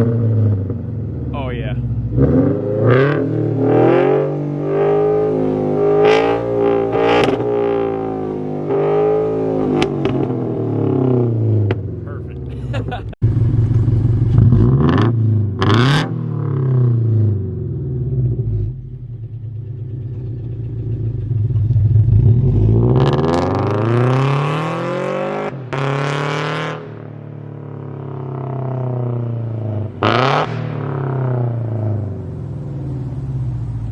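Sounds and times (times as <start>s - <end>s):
car engine revving: 0.0s - 33.9s
car engine idling: 10.8s - 15.4s, 17.4s - 22.9s, 31.0s - 33.9s.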